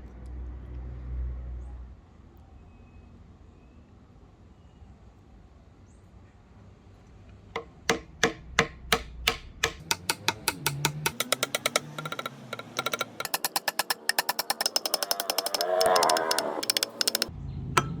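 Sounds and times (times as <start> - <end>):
sharp knocks on wood: 7.6 - 18.0.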